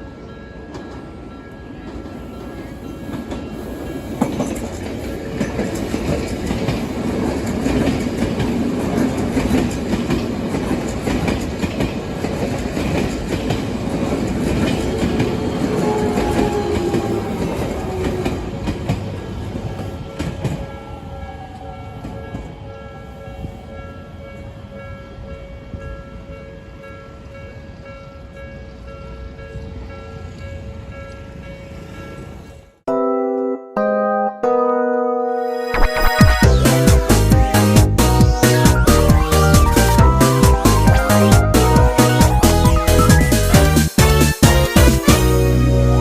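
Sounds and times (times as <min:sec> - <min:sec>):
crossing warning bell: 0:00.0 - 0:10.2, 0:20.2 - 0:33.1
train rumble: 0:00.0 - 0:27.9, 0:36.4 - 0:46.0.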